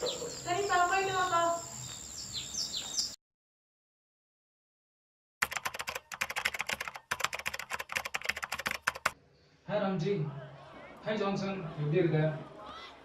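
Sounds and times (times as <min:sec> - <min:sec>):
birds chirping: 0:00.0 - 0:03.2
computer keyboard typing: 0:05.4 - 0:09.2.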